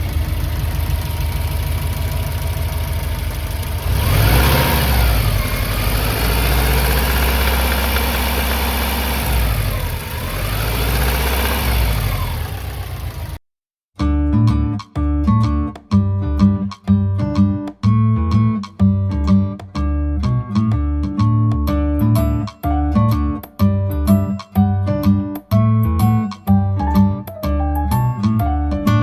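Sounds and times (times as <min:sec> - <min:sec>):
engine pattering knock: 0:00.0 - 0:04.3
car engine idling and revving: 0:00.0 - 0:13.4.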